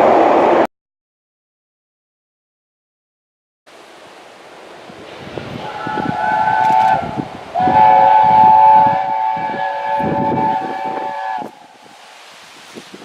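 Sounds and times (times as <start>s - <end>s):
locomotive exhaust beat: 5.0s - 11.8s
steam locomotive chime whistle: 5.6s - 11.7s.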